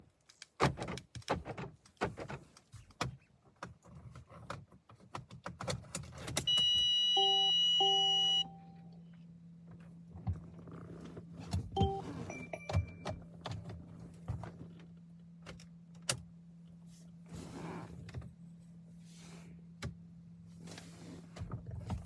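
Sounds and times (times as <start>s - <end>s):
electronic warning tone: 6.5s - 8.8s, 11.8s - 12.9s
low steady hum: 6.5s - 22.0s
low chime: 7.2s - 8.9s.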